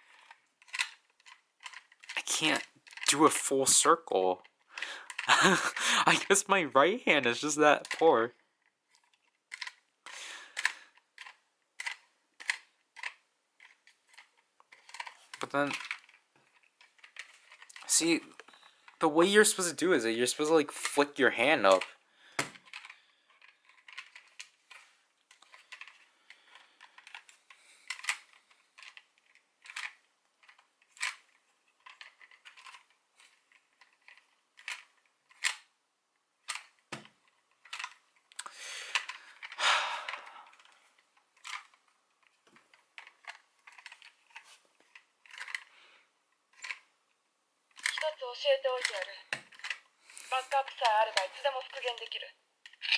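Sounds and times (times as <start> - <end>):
plastic toy clicking and rattling: 0.0 - 3.8, 4.4 - 6.4, 7.7 - 19.6, 20.6 - 35.7, 36.4 - 45.8, 46.5 - 46.9, 47.7 - 52.9
handling rustle: 22.5 - 35.5, 38.9 - 45.7.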